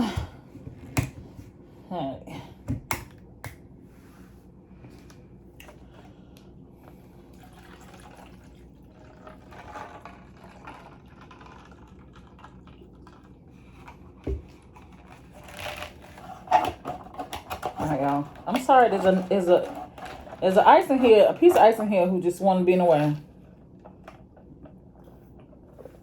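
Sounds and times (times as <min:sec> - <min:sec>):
person drinking juice with ice: 0:05.6 - 0:15.9.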